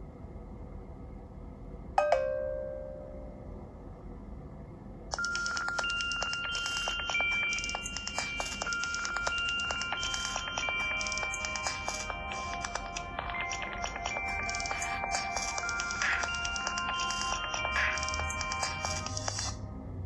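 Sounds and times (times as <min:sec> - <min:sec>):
bell-like chime: 0:05.2 - 0:19.4
tinkling chime melody: 0:05.2 - 0:19.5.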